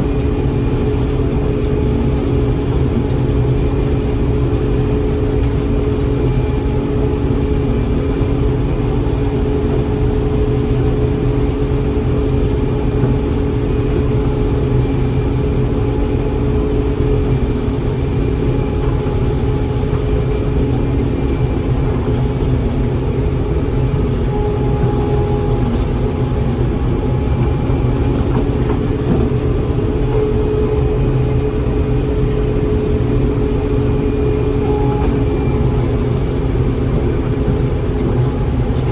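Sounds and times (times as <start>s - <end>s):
combine engine drone: 0.0s - 38.9s
steady hum: 0.0s - 38.9s
faint whine: 12.8s - 38.9s.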